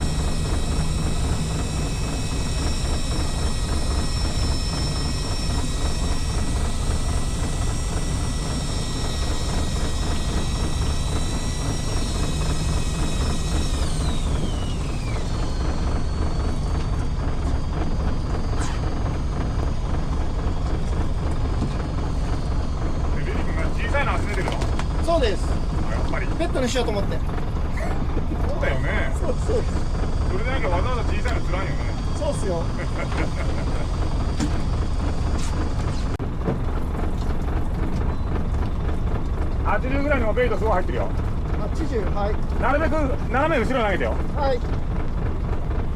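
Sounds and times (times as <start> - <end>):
high whine sliding down: 0.0 - 27.3, 28.6 - 36.2
boat engine rumbling: 0.0 - 45.9.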